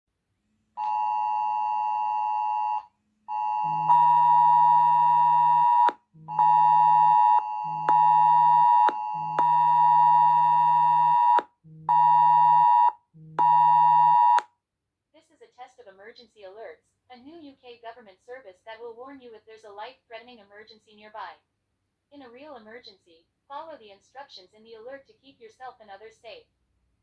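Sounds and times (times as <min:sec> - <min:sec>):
harsh two-tone phone alarm: 0:00.8 - 0:14.4
phone vibration buzz: 0:03.6 - 0:14.4.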